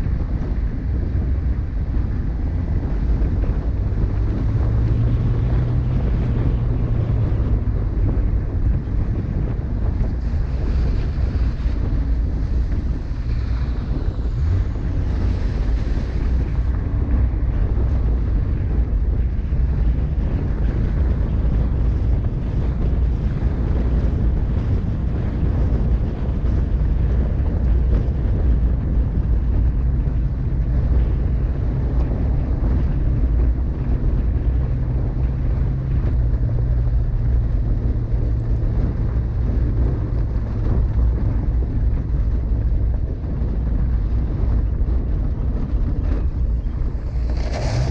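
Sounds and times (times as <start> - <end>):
vehicle engine droning: 0.0 - 47.9
wind buffeting microphone: 0.0 - 47.9.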